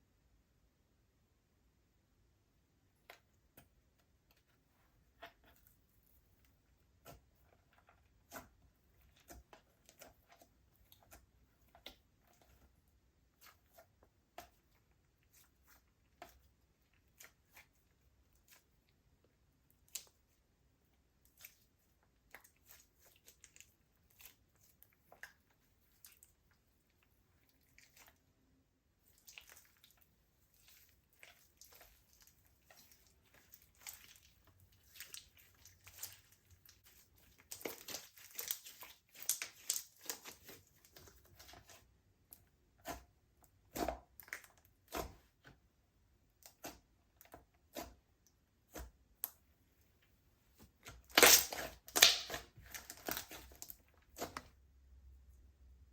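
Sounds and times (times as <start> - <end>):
slime clicking and popping: 51.1 - 53.4.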